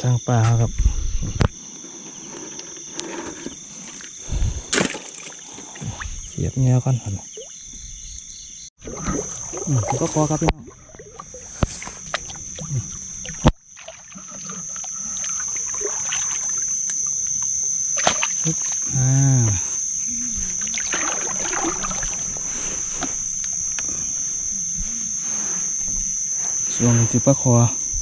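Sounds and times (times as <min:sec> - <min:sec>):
insects chirring: 0:00.0 - 0:28.0
person humming: 0:12.6 - 0:13.0, 0:18.4 - 0:20.6.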